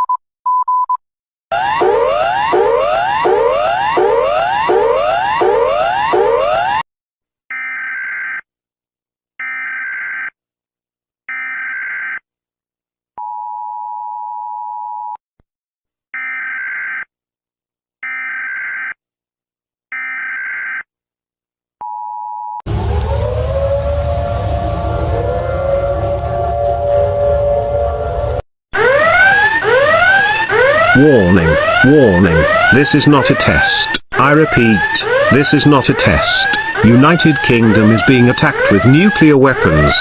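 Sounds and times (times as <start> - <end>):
civil defense siren wailing: 1.5 - 6.8, 22.7 - 33.8, 34.5 - 40.0.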